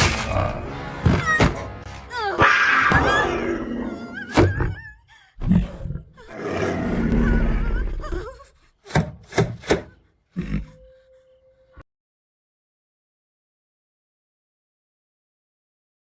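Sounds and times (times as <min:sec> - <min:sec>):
puma snarls and cries: 0:02.4 - 0:08.5.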